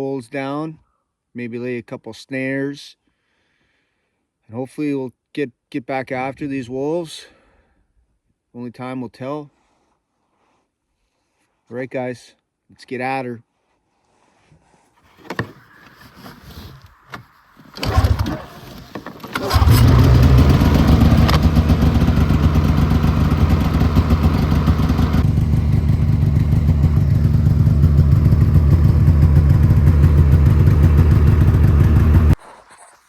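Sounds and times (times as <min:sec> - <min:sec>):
vehicle engine starting: 0:15.2 - 0:32.4.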